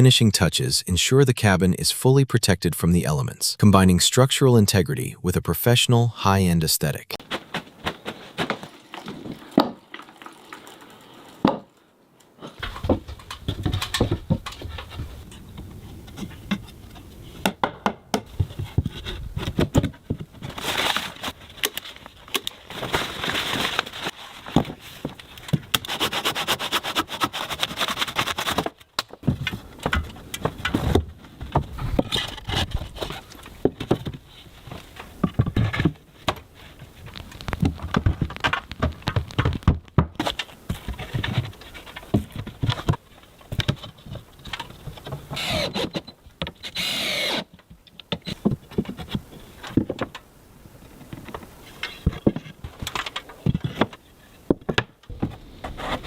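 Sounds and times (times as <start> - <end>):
wood scraping and rasping: 22.7 - 28.8, 40.2 - 47.5, 55.2 - 56.0.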